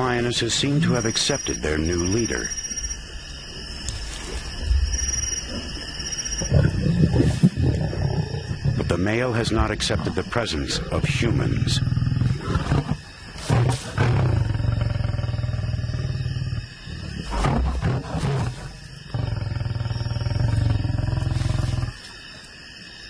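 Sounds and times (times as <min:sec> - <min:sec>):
lion growling and roaring: 0:05.4 - 0:09.0, 0:09.6 - 0:22.1.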